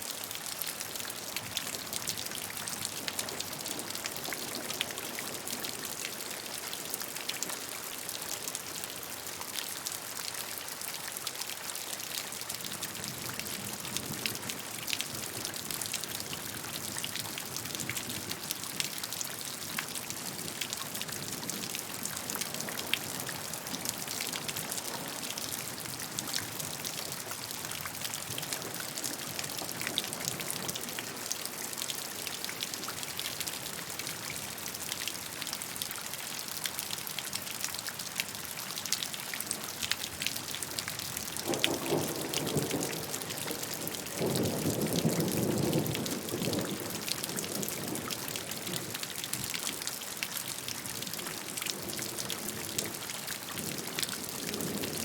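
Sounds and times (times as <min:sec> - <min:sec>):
raindrops pattering on a surface: 0:00.0 - 0:55.0
steady rain hissing: 0:39.4 - 0:49.8, 0:50.6 - 0:55.0.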